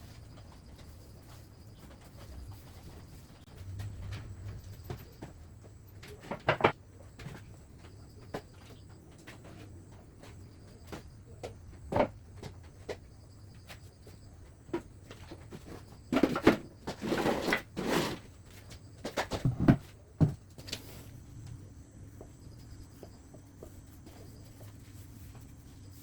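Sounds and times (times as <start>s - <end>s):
wood scraping and rubbing: 15.4s - 19.8s.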